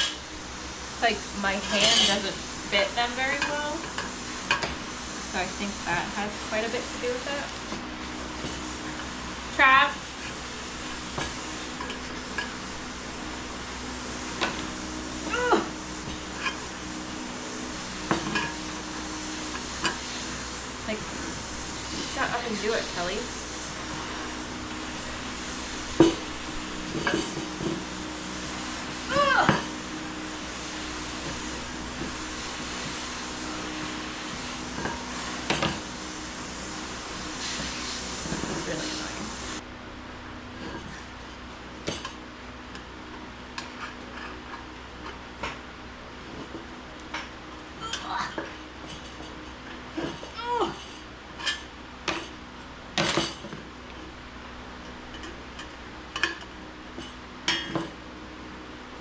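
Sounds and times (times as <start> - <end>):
fan blowing with low hum: 0.0 - 59.0
metal tools clanking: 1.6 - 2.3.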